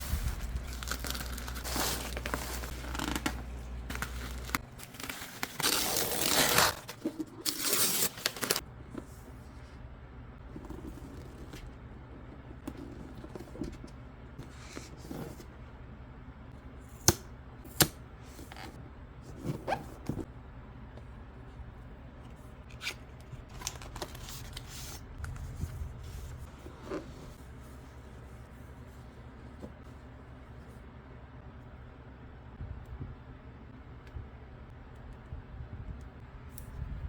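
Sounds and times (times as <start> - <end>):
packaging tearing: 0.6 - 8.6.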